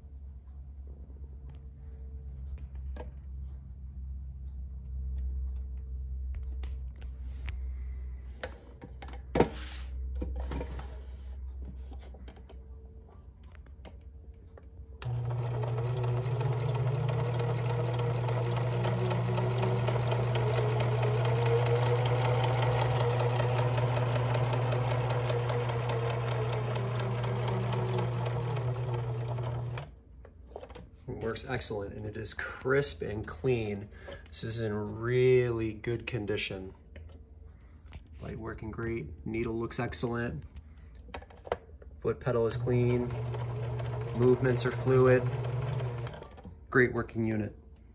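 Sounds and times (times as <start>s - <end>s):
sewing machine motor running: 15.0s - 29.9s, 42.5s - 46.4s.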